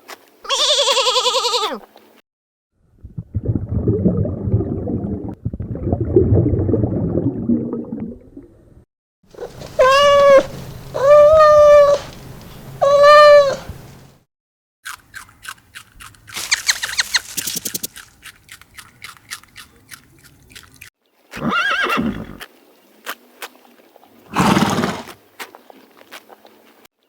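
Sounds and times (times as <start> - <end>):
cat meowing: 9.8 - 12.0, 12.8 - 13.7.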